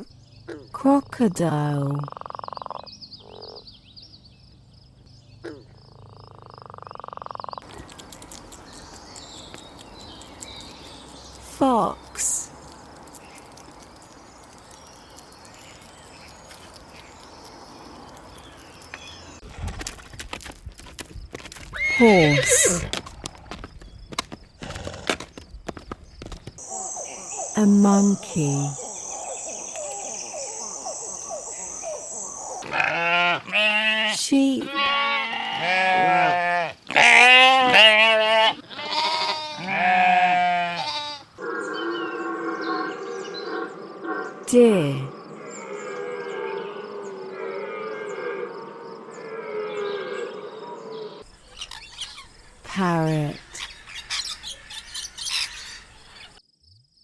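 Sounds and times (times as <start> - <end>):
outdoor background noise: 0.0 - 57.0
animal calls and chirps: 1.8 - 35.9, 38.4 - 56.4
rising animal call: 21.7 - 23.0, 26.6 - 34.1
sheep bleating: 32.6 - 41.3.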